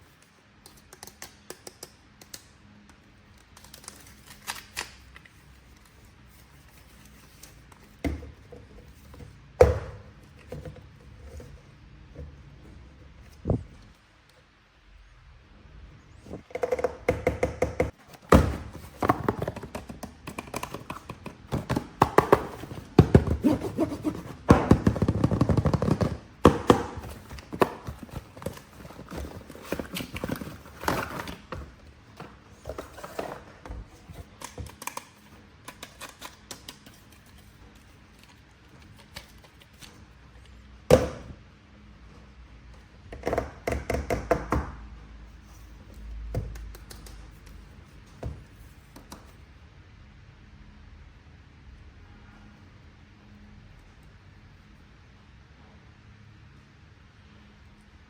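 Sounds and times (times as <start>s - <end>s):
plastic packaging rustling: 18.1s - 34.8s.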